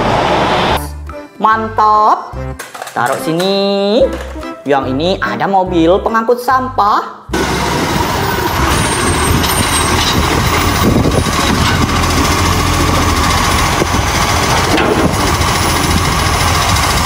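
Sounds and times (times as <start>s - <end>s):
toy truck engine running: 7.4s - 17.0s.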